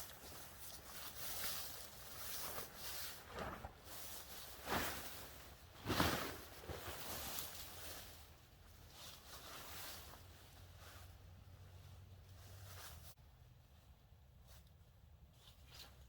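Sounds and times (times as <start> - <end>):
rustling and scuffing: 0.0 - 11.1, 12.3 - 13.2.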